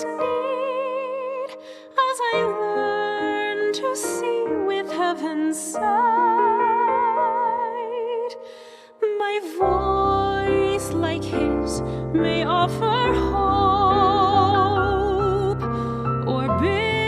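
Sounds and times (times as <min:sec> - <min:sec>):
piano accompaniment: 0:00.0 - 0:17.0
bass: 0:09.6 - 0:17.0.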